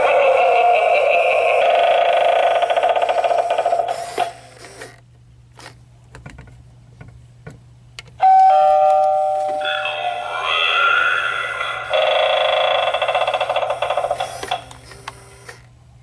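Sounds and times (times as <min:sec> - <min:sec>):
electronic doorbell chime: 0:08.2 - 0:10.5.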